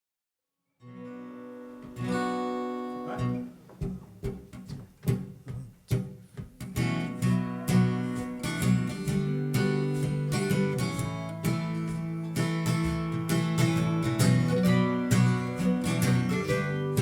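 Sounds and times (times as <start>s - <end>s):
acoustic guitar strumming and plucking: 0.8s - 17.0s.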